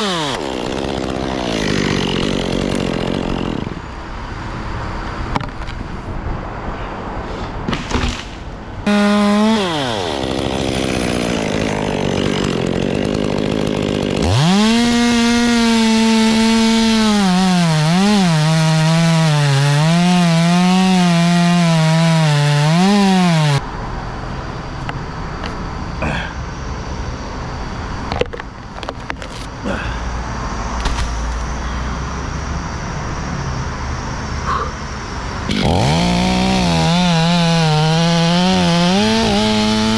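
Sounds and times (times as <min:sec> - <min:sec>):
chainsaw cutting wood: 0:00.0 - 0:03.9, 0:07.7 - 0:23.6, 0:35.5 - 0:39.9
traffic noise: 0:00.0 - 0:12.8, 0:23.6 - 0:39.4.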